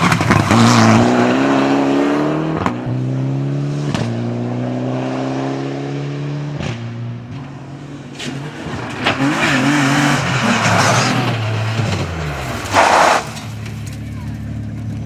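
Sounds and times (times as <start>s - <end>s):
rally car engine revving: 0.0s - 15.0s
tyres skidding: 6.6s - 15.0s
gear change crack: 8.1s - 15.0s.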